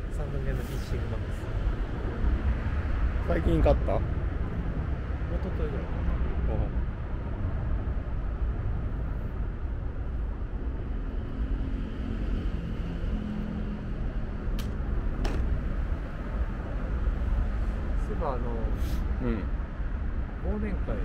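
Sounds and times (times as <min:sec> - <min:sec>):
low outdoor rumble: 0:00.0 - 0:21.0
sharp clicks: 0:14.6 - 0:15.5.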